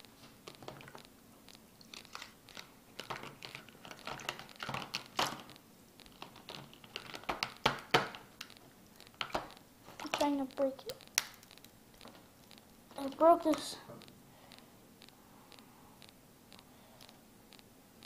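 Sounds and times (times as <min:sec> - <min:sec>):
crackling and scraping from handling: 0:00.5 - 0:14.6.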